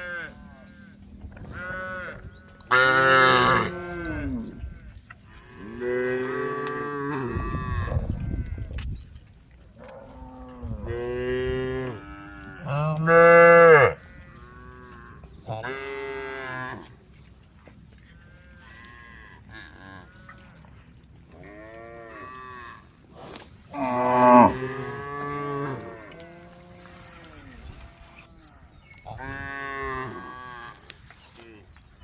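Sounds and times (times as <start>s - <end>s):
cows mooing: 1.5s - 8.5s, 9.8s - 17.0s, 23.7s - 27.5s, 29.1s - 30.9s.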